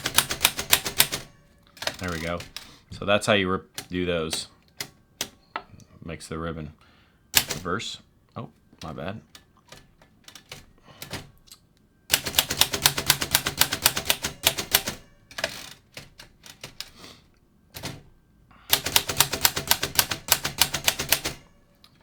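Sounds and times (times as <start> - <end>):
typewriter keys striking: 0.0 - 2.8, 3.7 - 5.4, 7.4 - 7.7, 8.8 - 11.4, 12.1 - 17.0, 17.7 - 18.1, 18.7 - 21.6.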